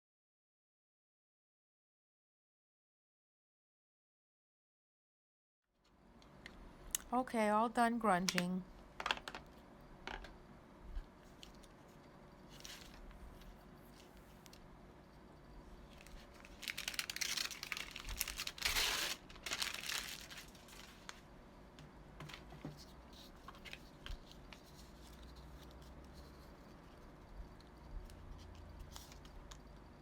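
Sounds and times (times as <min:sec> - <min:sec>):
paper crinkling and tearing: 0:15.9 - 0:21.2.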